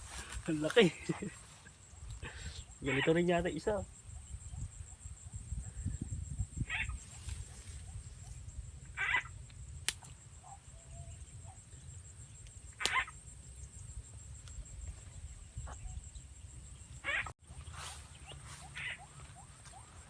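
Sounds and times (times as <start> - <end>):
frog croaking: 1.1 - 4.7, 6.5 - 7.0, 8.8 - 9.4, 12.7 - 13.3, 17.0 - 17.3.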